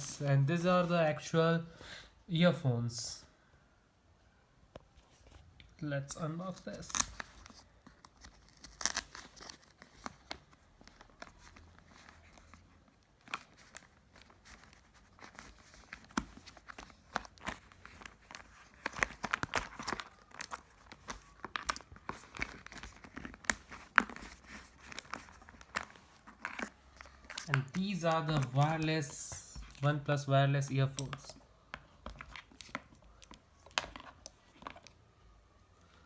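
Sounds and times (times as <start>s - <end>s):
packaging rustling and tearing: 6.5s - 31.4s.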